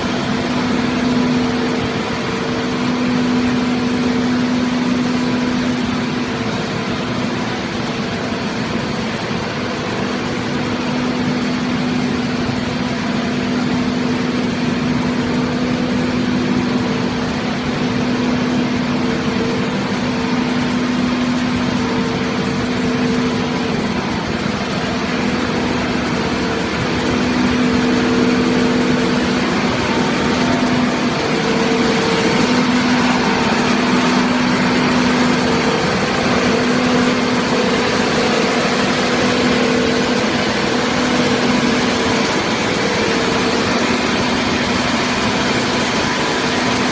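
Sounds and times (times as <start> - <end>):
hydraulic motor and pump droning: 0.0 - 46.9.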